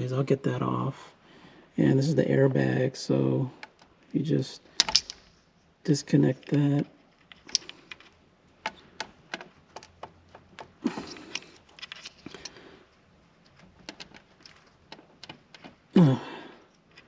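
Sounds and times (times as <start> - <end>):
hands working plastic connector clip: 3.6 - 5.4, 6.4 - 16.0.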